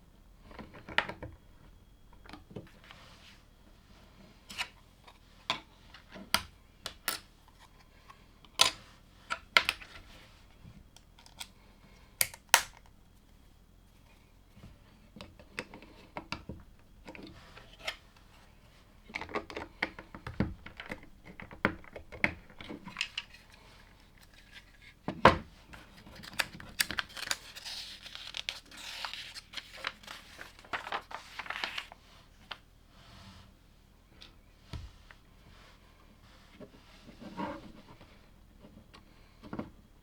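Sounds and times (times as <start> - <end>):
crinkling rustle: 25.8 - 32.0.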